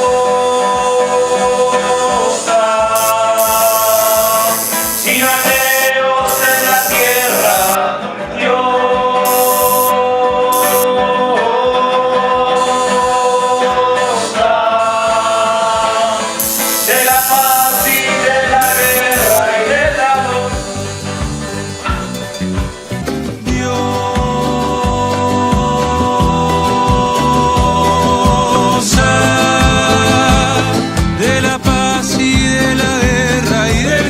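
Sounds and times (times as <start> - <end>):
band song with guitar and drums: 16.0 - 34.0.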